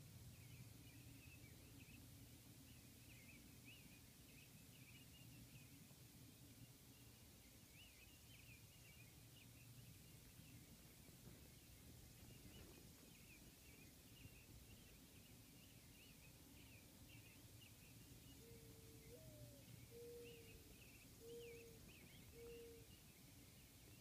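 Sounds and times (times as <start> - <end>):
small birds chirping: 0.0 - 24.0
low bird call: 15.6 - 23.1.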